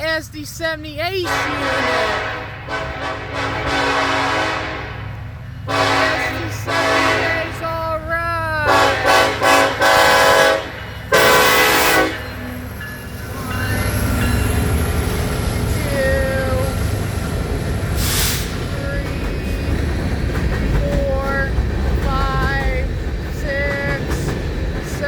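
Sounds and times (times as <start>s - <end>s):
train cars rolling past rumble: 0.0s - 25.0s
locomotive air horn blasts: 1.2s - 7.6s, 8.7s - 12.6s.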